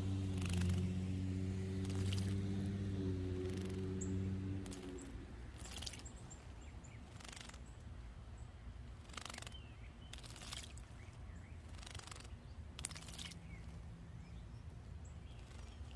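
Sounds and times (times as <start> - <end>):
bird splashing in water: 0.0 - 6.4, 7.1 - 7.6, 9.0 - 11.1, 11.7 - 13.8
low steady hum: 0.0 - 15.9
faint bird chirps: 3.4 - 15.9.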